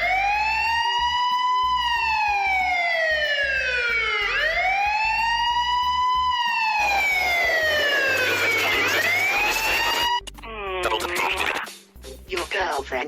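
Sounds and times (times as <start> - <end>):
siren-style phone ringtone: 0.0 - 10.3.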